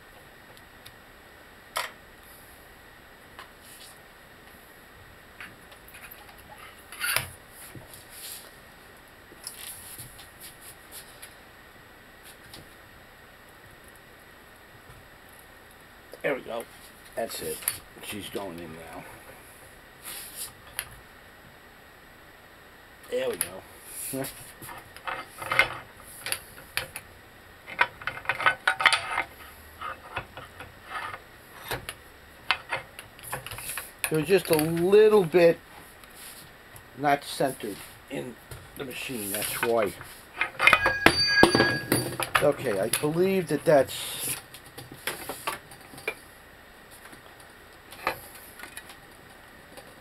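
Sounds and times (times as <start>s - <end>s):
metal tools clinking: 40.5s - 42.5s.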